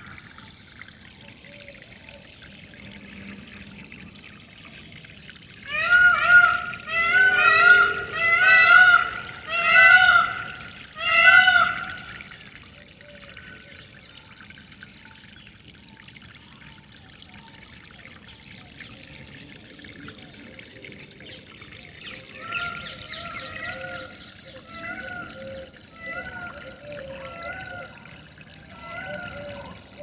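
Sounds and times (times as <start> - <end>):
water flowing and trickling: 0.0 - 30.0
birds calling: 5.6 - 14.2, 21.2 - 30.0.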